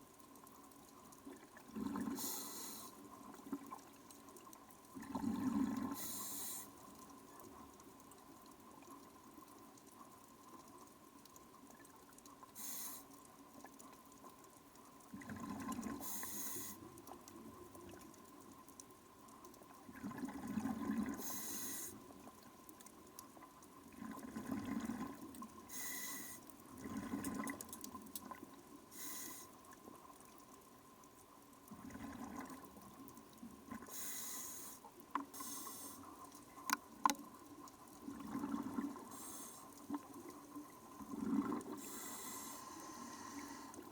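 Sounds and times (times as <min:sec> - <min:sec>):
exhaled bubbles: 0:01.6 - 0:02.4, 0:05.0 - 0:06.1, 0:23.9 - 0:25.4, 0:26.7 - 0:28.4, 0:31.7 - 0:32.9, 0:38.0 - 0:39.4, 0:40.0 - 0:42.4
regulator inhale hiss: 0:02.1 - 0:03.0, 0:05.9 - 0:06.8, 0:12.6 - 0:13.2, 0:16.0 - 0:16.9, 0:21.2 - 0:22.0, 0:25.7 - 0:26.4, 0:28.9 - 0:29.6, 0:33.9 - 0:36.2, 0:39.1 - 0:39.8, 0:41.8 - 0:43.9.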